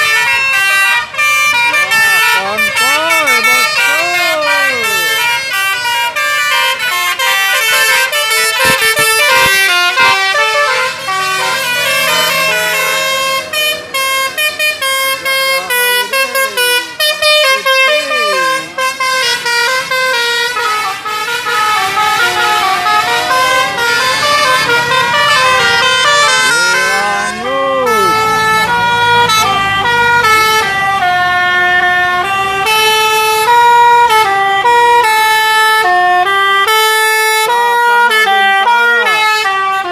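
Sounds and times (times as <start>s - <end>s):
musical air horns playing tunes: 0.0s - 39.9s.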